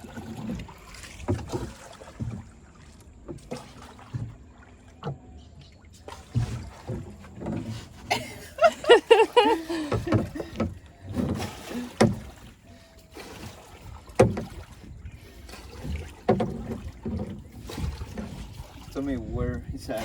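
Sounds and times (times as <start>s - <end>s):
water sounds: 0.0s - 20.0s
poles knocking on boat: 8.8s - 12.4s, 14.1s - 14.9s, 15.9s - 18.2s.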